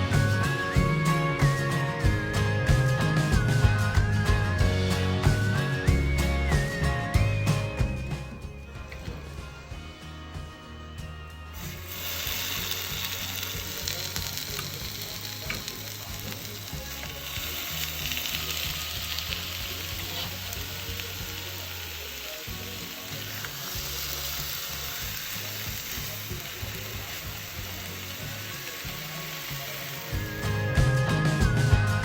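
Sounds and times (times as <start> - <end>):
fish sizzling on a grill: 11.5 - 31.8.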